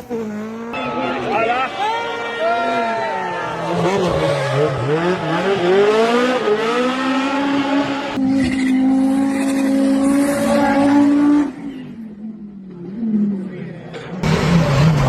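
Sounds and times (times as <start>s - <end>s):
rally car engine revving: 3.4s - 15.0s.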